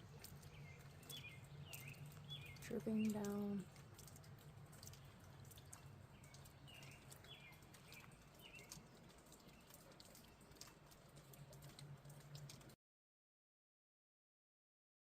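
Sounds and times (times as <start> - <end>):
water dripping: 0.0 - 12.8
bird chirping: 0.2 - 3.6, 4.7 - 10.7.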